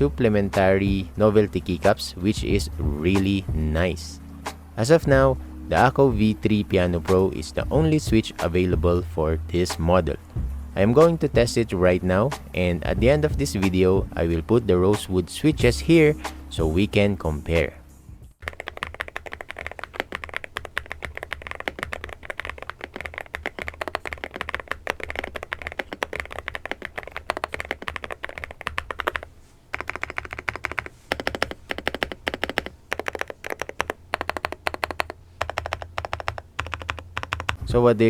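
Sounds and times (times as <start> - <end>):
mechanical keyboard typing: 18.4 - 37.6.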